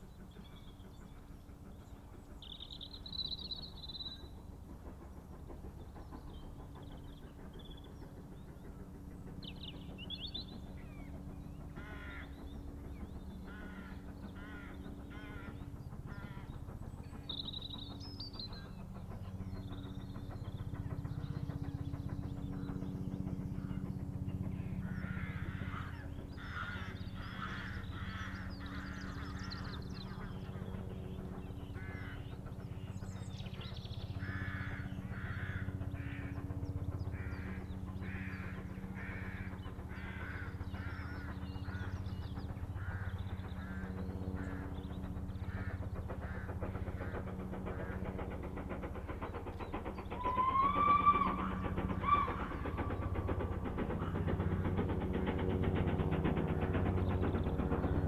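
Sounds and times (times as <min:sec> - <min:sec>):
steady low hum: 0:00.0 - 0:58.0
crows cawing: 0:11.8 - 0:12.3, 0:13.5 - 0:16.5, 0:25.0 - 0:29.8, 0:34.2 - 0:36.3, 0:37.2 - 0:41.9, 0:50.2 - 0:53.3.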